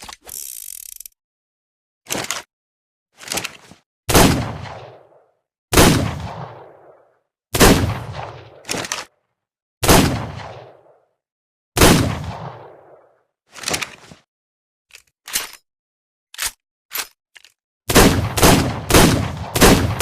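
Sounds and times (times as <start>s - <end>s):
revolver gunshots: 4.1s - 7.0s, 7.6s - 8.7s, 9.8s - 10.9s, 11.8s - 13.0s, 17.9s - 20.0s.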